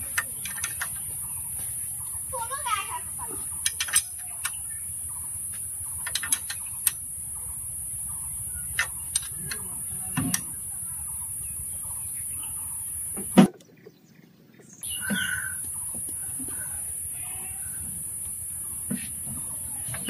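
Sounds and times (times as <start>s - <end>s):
steady high-pitched hiss: 0.0s - 13.5s, 14.8s - 20.0s
clicks and taps of metal tools: 0.1s - 1.0s, 3.6s - 4.6s, 5.5s - 7.0s.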